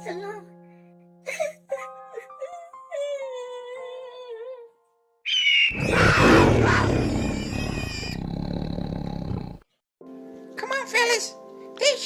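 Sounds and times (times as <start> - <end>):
wavering pitched wail: 5.7 - 8.2
creature roar with screech: 5.7 - 9.6.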